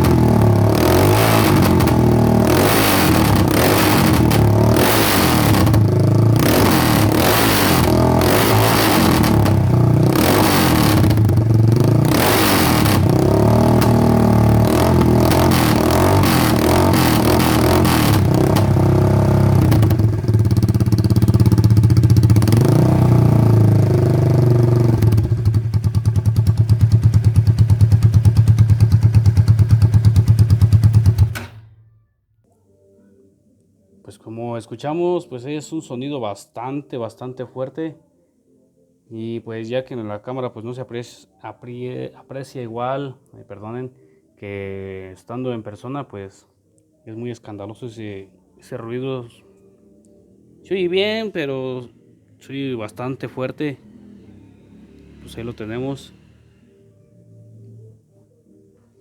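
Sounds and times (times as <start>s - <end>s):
loud motorcycle engine revving: 0.0s - 31.6s, 53.8s - 56.6s.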